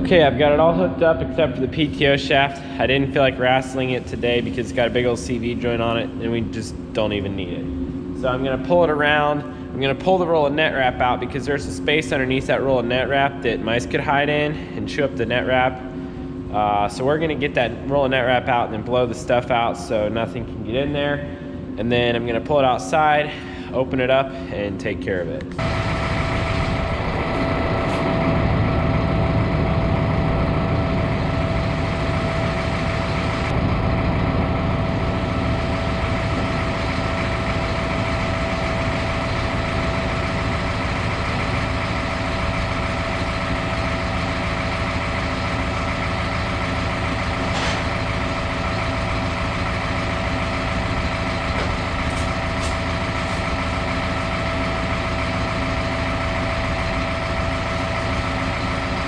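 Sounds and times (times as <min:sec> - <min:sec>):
constant whine: 0:00.0 - 0:59.0
tractor engine running: 0:25.6 - 0:59.0.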